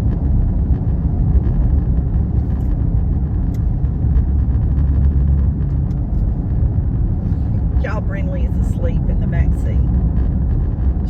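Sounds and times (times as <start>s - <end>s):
car road noise inside cabin: 0.0s - 11.0s.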